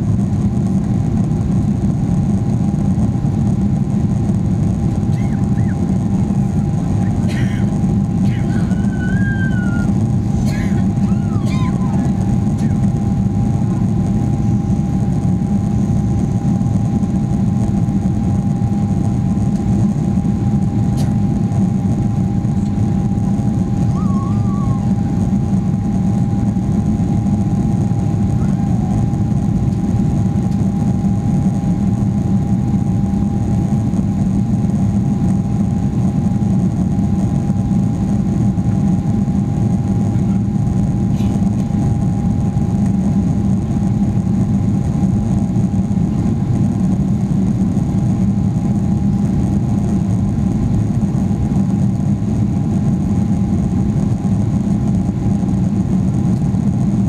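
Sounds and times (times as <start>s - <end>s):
jet engines droning: 0.0s - 57.0s.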